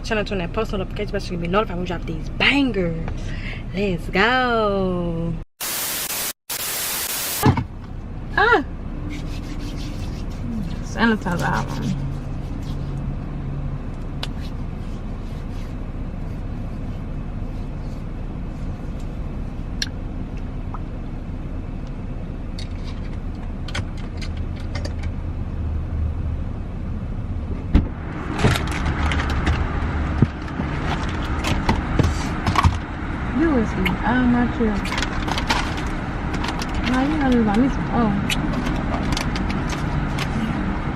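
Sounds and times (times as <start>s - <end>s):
car cabin hum: 7.2s - 40.9s
rustling and clattering: 27.7s - 32.8s, 34.8s - 37.7s.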